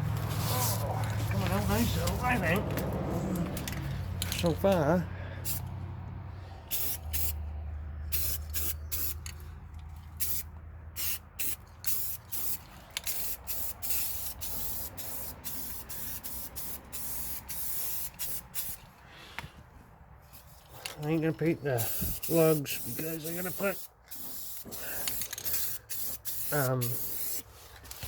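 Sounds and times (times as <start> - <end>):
spray can spraying in bursts: 6.7 - 7.4, 8.1 - 9.2, 10.2 - 18.8, 21.8 - 27.5.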